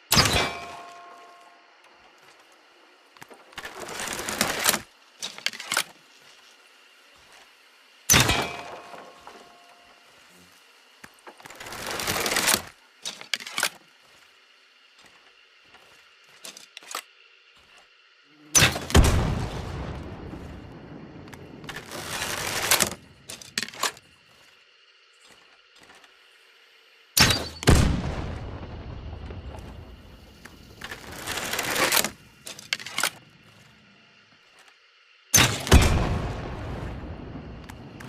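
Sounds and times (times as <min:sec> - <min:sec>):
crossbow shots: 0:18.6 - 0:20.1, 0:35.4 - 0:36.9.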